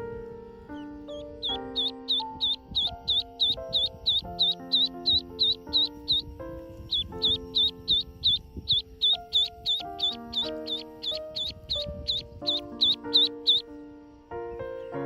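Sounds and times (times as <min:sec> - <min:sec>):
background music sustained chords: 0:00.0 - 0:15.0
ducklings peeping: 0:00.0 - 0:15.0.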